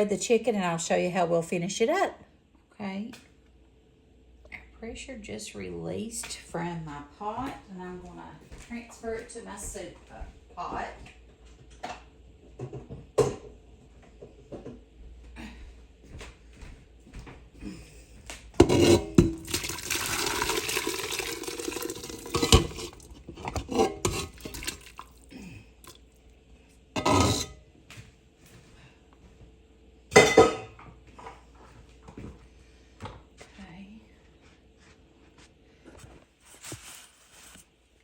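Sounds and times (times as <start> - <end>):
metal pots and utensil clanking: 18.6 - 25.2, 27.0 - 27.6, 30.1 - 30.9
liquid pouring: 19.2 - 26.0.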